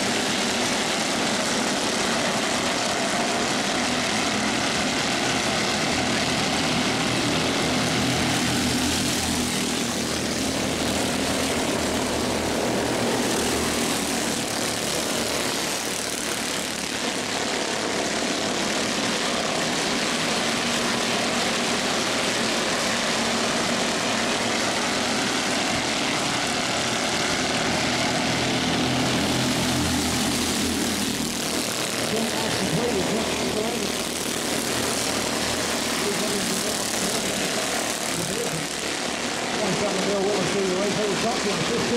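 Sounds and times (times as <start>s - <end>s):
race car engines droning: 0.0s - 41.9s.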